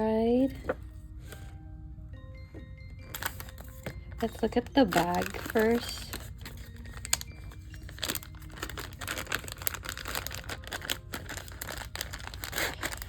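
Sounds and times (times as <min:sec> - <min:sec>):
plastic packaging crinkling: 0:03.0 - 0:13.0.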